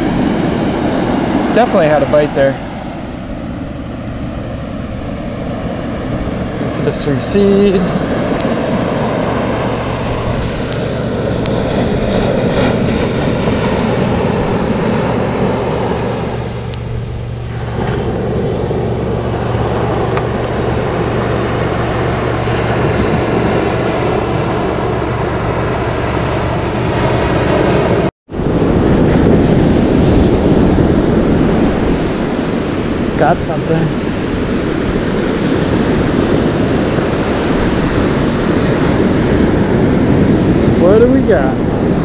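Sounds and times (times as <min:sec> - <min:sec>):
surf breaking on beach: 0:00.0 - 0:42.0
wind rushing over microphone: 0:00.0 - 0:42.0.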